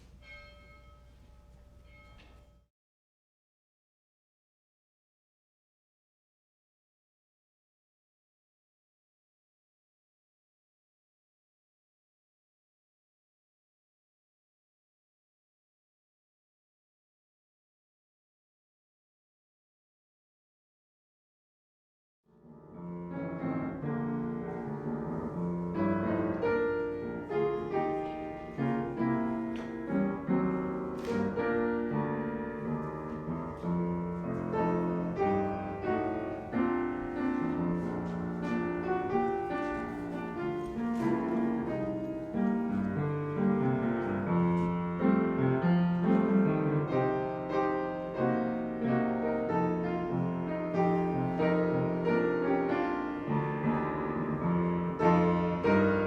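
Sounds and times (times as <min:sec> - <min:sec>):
piano music: 0:22.4 - 0:56.0.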